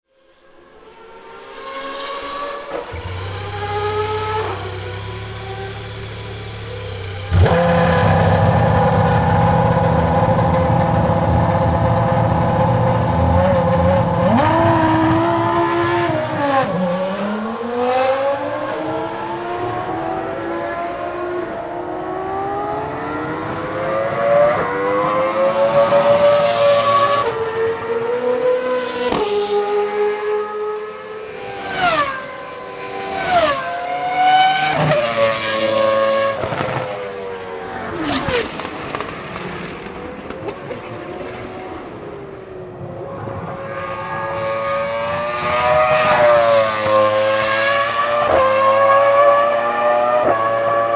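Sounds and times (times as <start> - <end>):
racing car engine revving: 2.8 - 21.6, 43.7 - 50.9.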